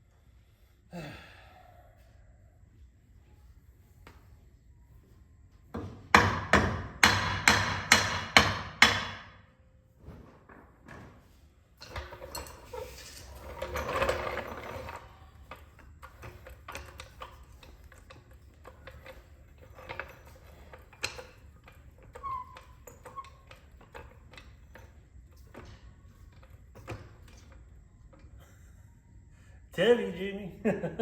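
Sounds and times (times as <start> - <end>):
metallic clicks and knocks: 13.4 - 28.3.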